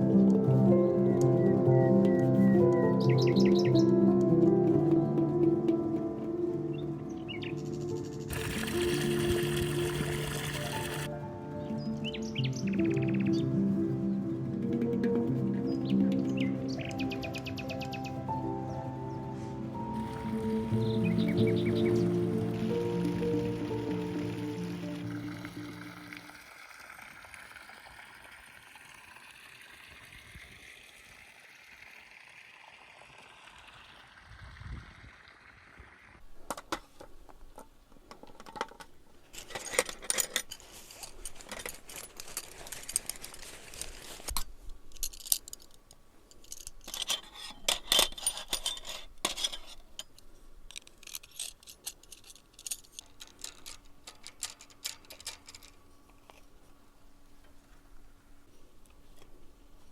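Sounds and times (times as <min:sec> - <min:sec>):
small hard objects clinking: 0:07.6 - 0:11.1, 0:19.8 - 0:26.4, 0:38.2 - 0:56.4
faint hiss: 0:16.2 - 0:37.9.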